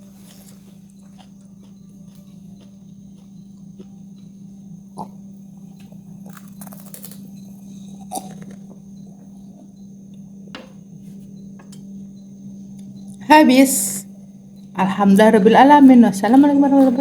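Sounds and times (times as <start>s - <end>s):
close-up chewing and mouth sounds: 0.0s - 8.8s
steady low hum: 0.0s - 17.0s
crunchy clicks: 6.2s - 7.3s.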